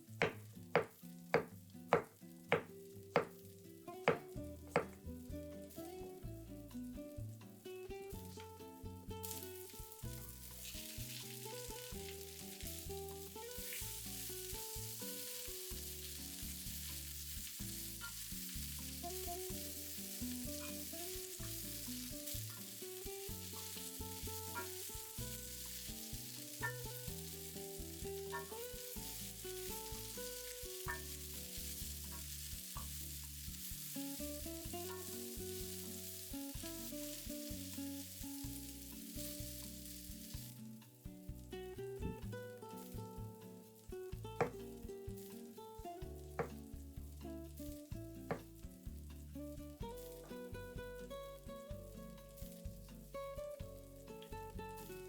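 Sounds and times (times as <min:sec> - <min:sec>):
sizzling hiss: 0:00.0 - 0:55.0
background music: 0:33.8 - 0:55.0.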